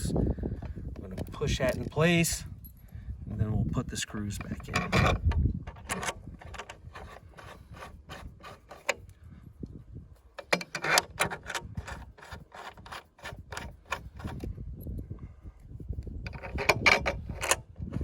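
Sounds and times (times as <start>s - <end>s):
rubbing scrape: 6.7s - 9.1s, 10.7s - 14.5s.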